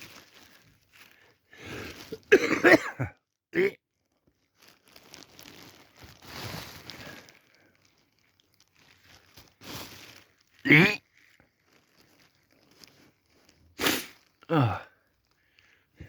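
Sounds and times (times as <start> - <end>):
man coughing and gagging: 2.1 - 3.8, 10.6 - 11.0.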